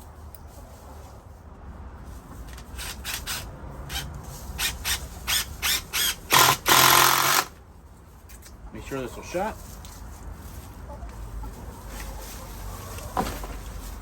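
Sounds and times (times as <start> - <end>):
power drill driving screw: 2.8 - 7.5.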